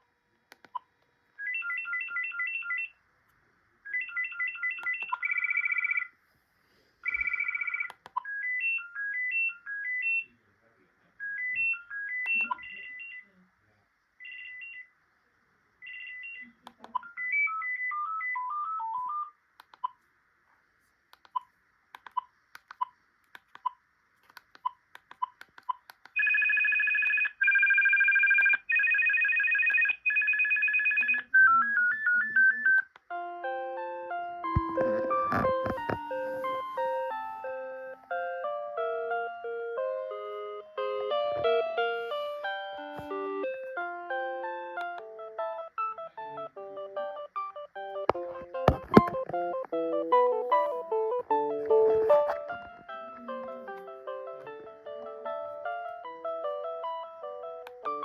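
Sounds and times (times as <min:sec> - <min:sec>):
electronic beeping ringtone melodies: 0:01.4 - 0:03.0, 0:03.9 - 0:06.1, 0:07.0 - 0:10.3, 0:11.2 - 0:13.2, 0:15.8 - 0:19.3, 0:26.2 - 0:53.7.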